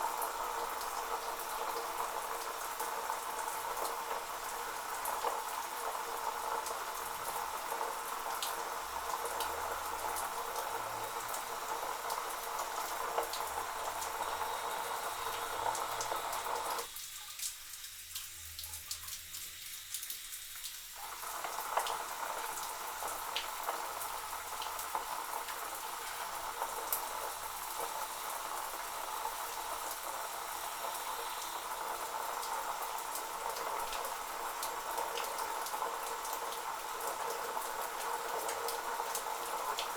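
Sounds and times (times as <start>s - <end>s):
water drips and crackles: 0.0s - 39.9s
electric shower spraying water: 10.5s - 16.9s.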